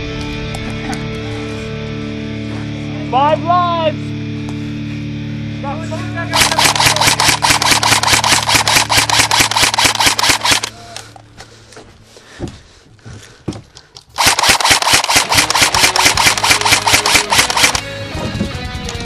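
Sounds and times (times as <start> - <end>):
airsoft gun firing: 6.3 - 10.8, 14.2 - 17.8
gun motor humming: 6.3 - 10.8, 14.2 - 17.9.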